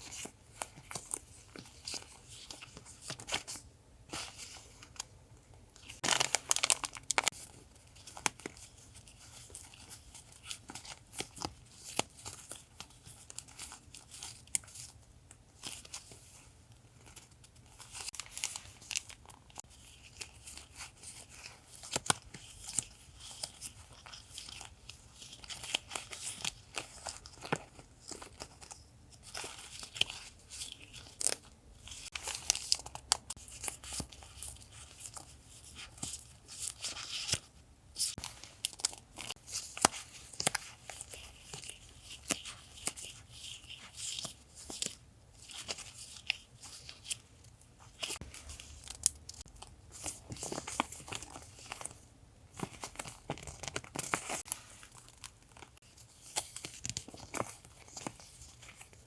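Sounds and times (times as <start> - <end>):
paper packaging crinkling and tearing: 5.8 - 14.7.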